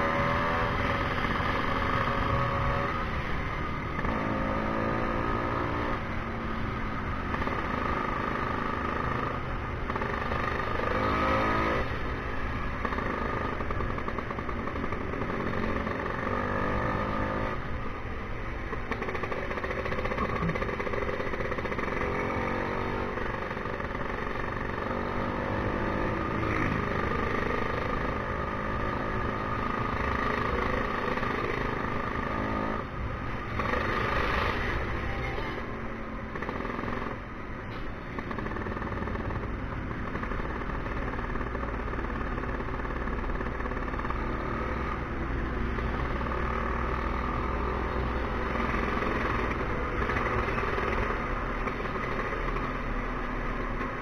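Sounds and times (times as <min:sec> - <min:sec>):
scooter engine accelerating: 0:18.9 - 0:32.8.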